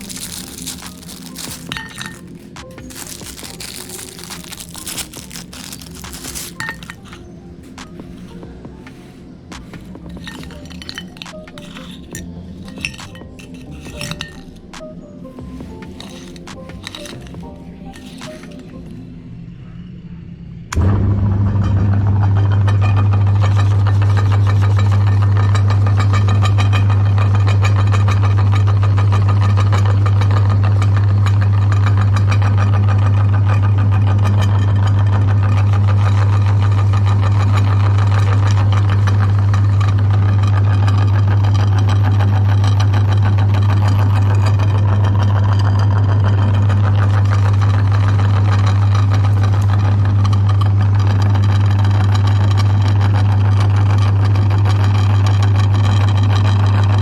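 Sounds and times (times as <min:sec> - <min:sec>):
electric meat grinder humming: 0:20.8 - 0:57.0.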